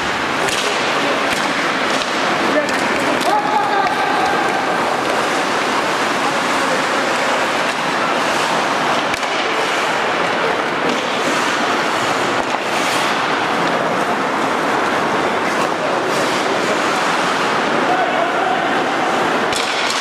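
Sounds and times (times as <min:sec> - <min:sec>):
skate blades scraping ice: 0:00.1 - 0:17.9
stick hitting puck: 0:00.4 - 0:06.0, 0:09.0 - 0:11.8, 0:12.4 - 0:14.1, 0:19.5 - 0:20.0.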